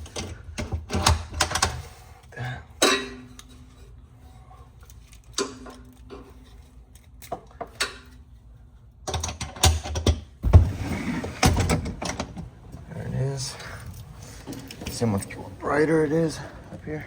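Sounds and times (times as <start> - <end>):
hatch thumping and clanking open: 9.1 - 12.4.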